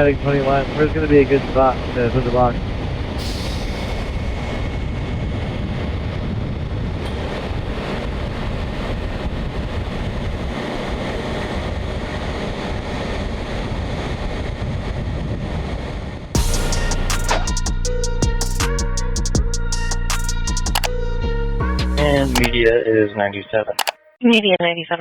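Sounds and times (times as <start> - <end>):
wind on microphone: 4.0 - 16.3.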